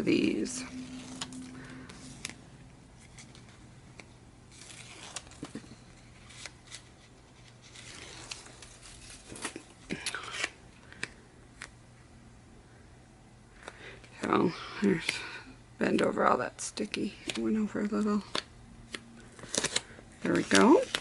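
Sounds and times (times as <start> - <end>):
paper tearing and crinkling: 0.8 - 2.4, 4.5 - 10.6, 19.3 - 21.0.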